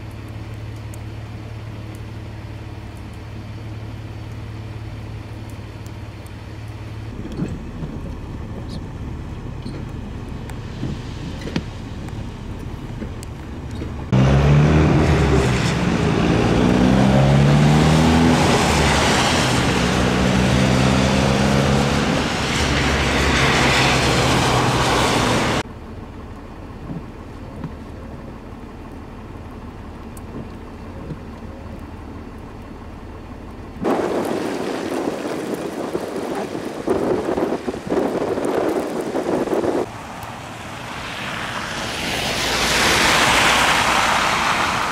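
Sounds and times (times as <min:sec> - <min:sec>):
outdoor traffic noise: 0:00.0 - 0:44.9
vehicle engine revving: 0:09.6 - 0:25.7
wind buffeting microphone: 0:33.8 - 0:39.9.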